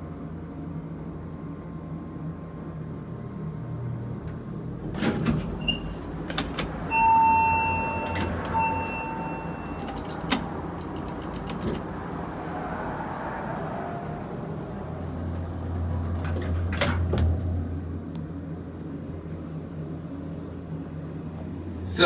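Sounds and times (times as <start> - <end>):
elevator doors clunking: 4.0 - 12.6, 13.4 - 22.0
elevator chime beeps: 5.4 - 11.5.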